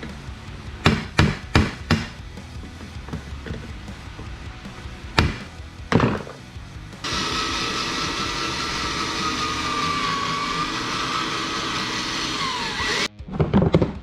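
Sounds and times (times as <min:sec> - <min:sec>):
power tool whining: 0:07.0 - 0:13.1.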